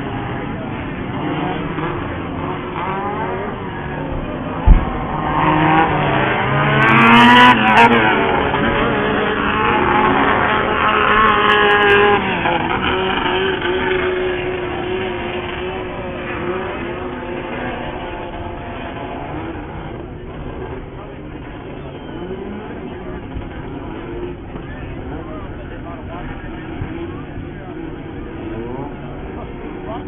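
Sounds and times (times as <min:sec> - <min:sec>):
buggy engines revving: 0:00.0 - 0:30.0
sudden thump: 0:04.6 - 0:05.1.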